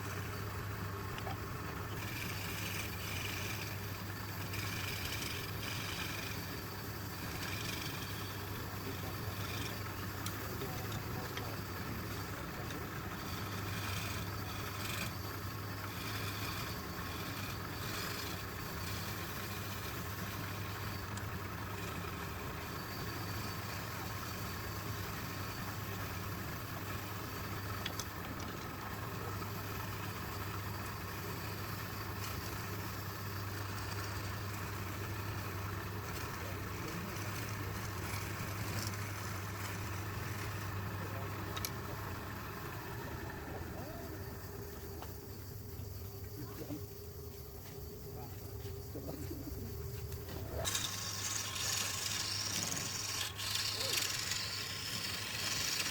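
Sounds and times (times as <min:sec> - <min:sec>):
wood lathe motor humming: 0:00.0 - 0:55.9.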